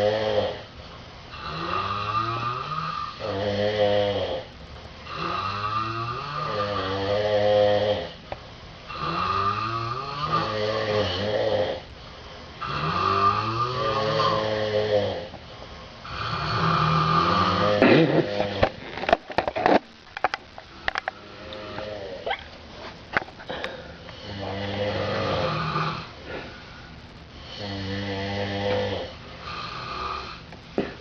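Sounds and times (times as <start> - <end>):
people snoring: 0.0 - 0.7, 1.3 - 8.2, 8.9 - 11.9, 12.6 - 15.4, 16.0 - 19.1, 21.0 - 22.3, 23.5 - 26.6, 27.4 - 31.0.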